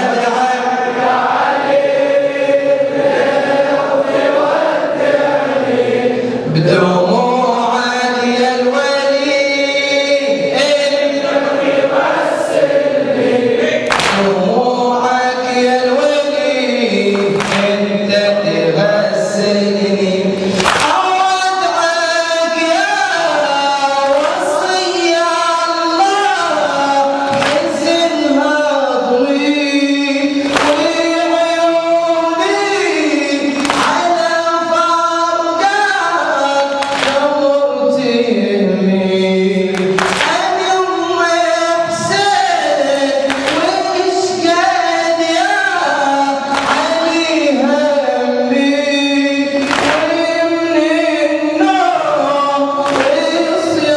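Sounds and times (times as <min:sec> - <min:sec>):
man chanting: 0:00.0 - 0:03.0, 0:03.6 - 0:53.9
group of voices singing along: 0:00.0 - 0:21.6
sharp rhythmic hits: 0:06.6 - 0:23.1, 0:24.2 - 0:28.5, 0:29.2 - 0:37.7, 0:38.4 - 0:53.9.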